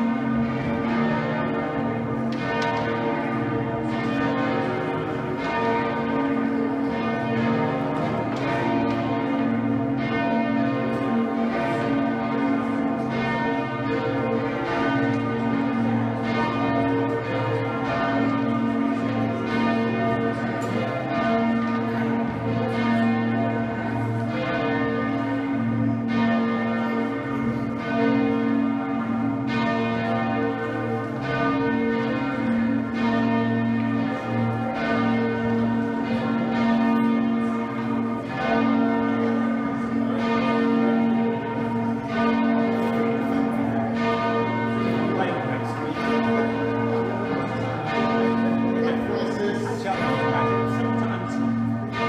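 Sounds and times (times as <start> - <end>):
church bells ringing: 0.0 - 52.0
deep hum of heavy bells: 0.0 - 52.0.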